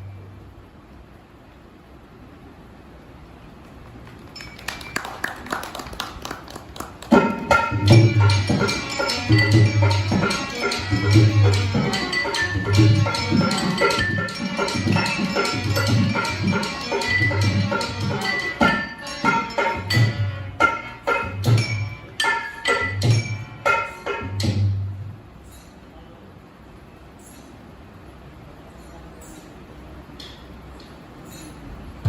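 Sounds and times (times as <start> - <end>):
folk music with drums: 7.1 - 25.0.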